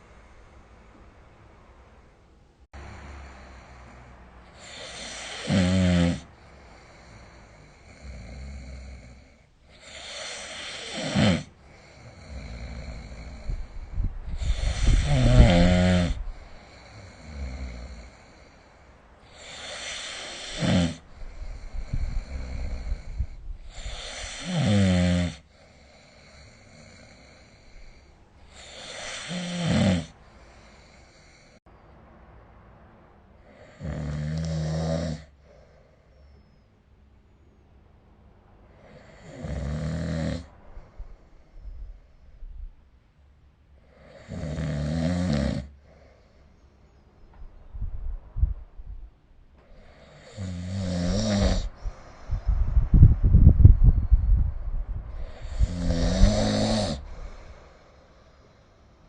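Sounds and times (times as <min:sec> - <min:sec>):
person snoring: 0:02.8 - 0:18.6, 0:19.2 - 0:31.6, 0:33.5 - 0:35.6, 0:38.8 - 0:40.5, 0:43.8 - 0:46.1, 0:49.8 - 0:52.6, 0:55.1 - 0:58.4.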